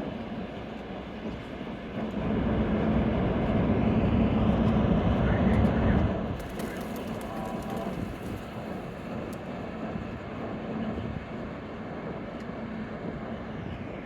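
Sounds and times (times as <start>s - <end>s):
ferry engines humming: 0.0s - 11.0s.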